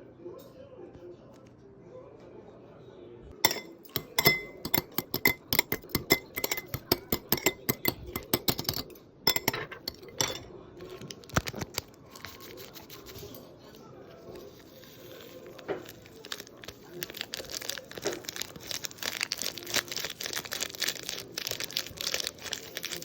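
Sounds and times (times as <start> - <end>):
utensils clinking on dishware: 3.4 - 11.0, 12.6 - 23.0.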